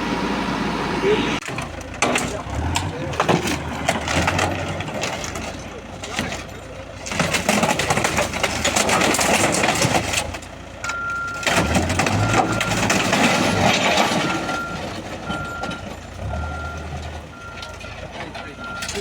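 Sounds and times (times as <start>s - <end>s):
engine running: 0.0s - 19.0s
debris clattering and crashing: 1.4s - 19.0s
reversing beeper: 12.1s - 19.0s.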